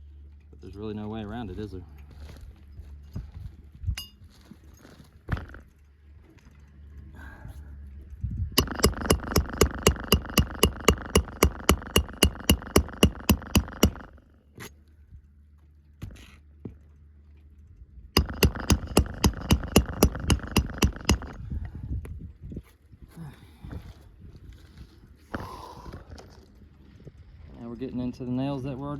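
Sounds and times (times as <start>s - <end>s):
hammer driving roofing nails: 8.6s - 14.2s, 18.2s - 21.4s.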